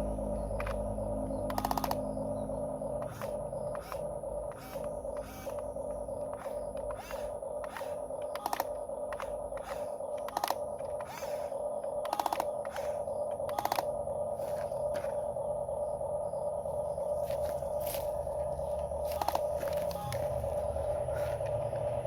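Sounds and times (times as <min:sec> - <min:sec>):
small electric motors whining: 0:00.0 - 0:22.0
clicks: 0:03.0 - 0:13.9.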